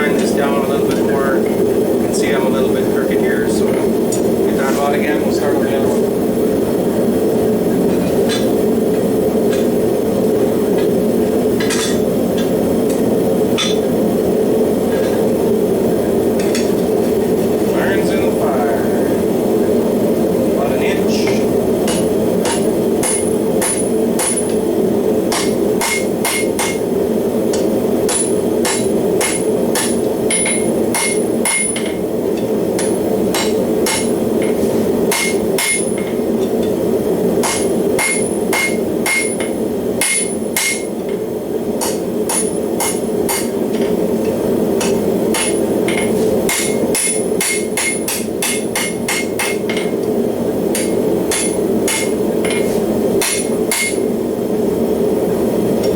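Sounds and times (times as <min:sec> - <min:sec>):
forge running: 0:00.0 - 0:55.9
hammer striking steel on anvil: 0:13.6 - 0:13.9, 0:21.2 - 0:24.6, 0:25.3 - 0:26.8, 0:27.5 - 0:36.7, 0:37.4 - 0:41.2, 0:41.8 - 0:50.0, 0:50.7 - 0:54.1.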